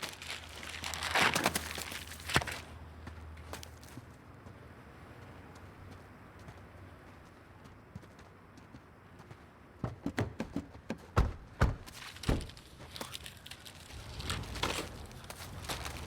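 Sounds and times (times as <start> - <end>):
knocks and thuds: 9.8 - 12.6.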